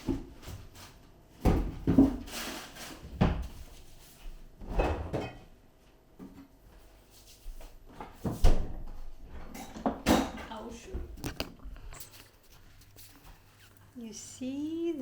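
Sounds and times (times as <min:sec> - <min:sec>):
kitchen knocks and clunks: 0:01.4 - 0:02.4, 0:03.0 - 0:03.7, 0:04.6 - 0:05.6, 0:07.8 - 0:11.7.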